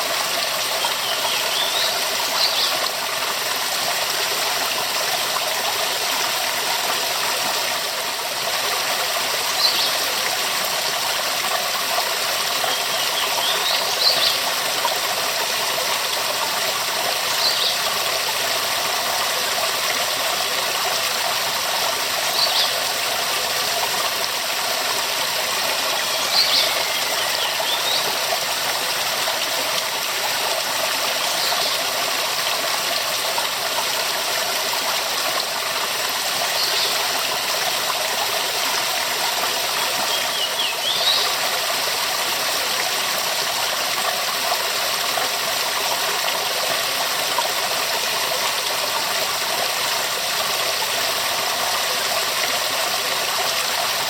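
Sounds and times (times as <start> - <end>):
waterfall rushing: 21.0 - 41.3.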